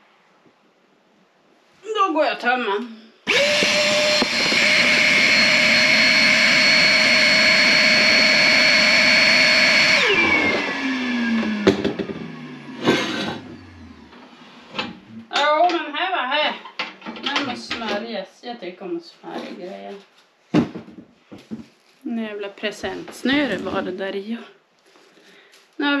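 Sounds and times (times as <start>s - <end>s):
vacuum cleaner running: 3.2s - 15.0s
knocks: 20.5s - 21.7s.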